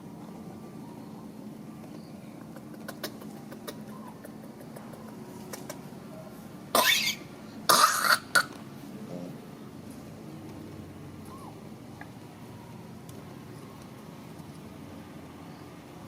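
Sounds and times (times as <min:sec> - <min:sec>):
monkey coughing: 0:02.3 - 0:05.9, 0:06.7 - 0:08.6.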